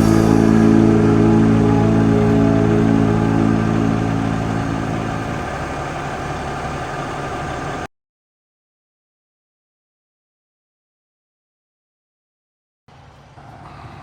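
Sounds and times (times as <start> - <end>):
electronic music low tones: 0.0 - 6.0.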